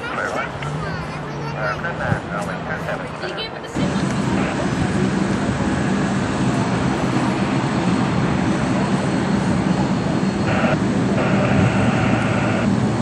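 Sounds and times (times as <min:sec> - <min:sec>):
jet engines rumbling: 0:00.0 - 0:13.0.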